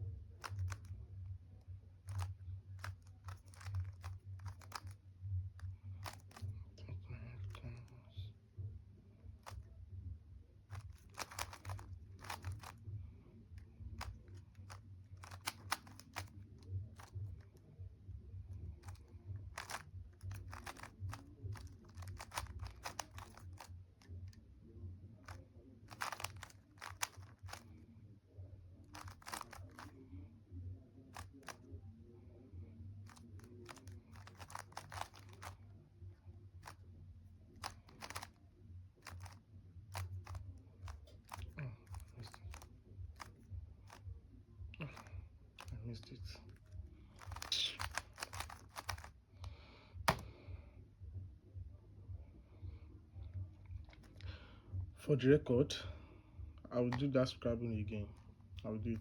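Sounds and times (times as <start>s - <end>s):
low steady hum: 0.0s - 59.0s
plastic cube clicking: 0.4s - 1.0s, 2.0s - 5.0s, 5.6s - 6.5s, 10.7s - 12.8s, 14.0s - 17.4s, 18.8s - 24.2s, 25.3s - 27.7s, 28.9s - 30.0s, 31.1s - 31.6s, 33.0s - 35.6s, 36.6s - 36.8s, 37.6s - 38.4s, 39.0s - 44.0s, 44.9s - 45.7s, 47.2s - 49.1s, 50.1s - 50.3s.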